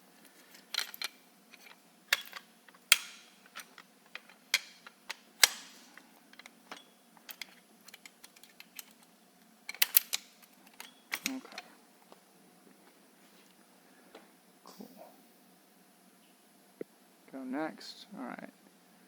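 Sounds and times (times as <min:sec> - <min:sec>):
small hard parts clicking: 0:00.2 - 0:09.1, 0:09.7 - 0:11.7.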